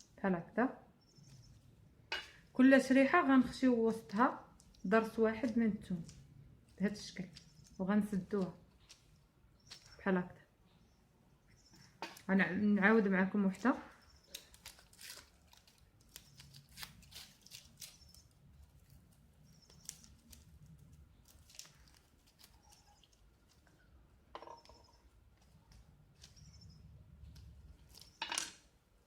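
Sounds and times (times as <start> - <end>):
light clicks and rustles: 4.5 - 10.1.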